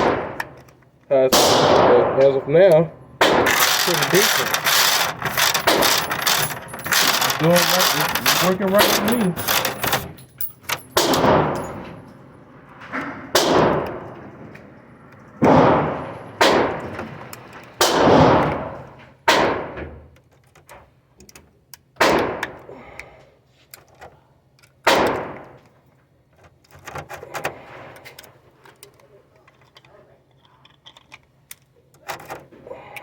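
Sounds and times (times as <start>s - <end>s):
pistol shots: 0.0s - 0.6s, 1.3s - 2.4s, 3.2s - 6.1s, 11.0s - 11.8s, 13.3s - 14.0s, 15.4s - 17.0s, 17.8s - 19.8s, 22.0s - 22.6s, 24.8s - 25.6s.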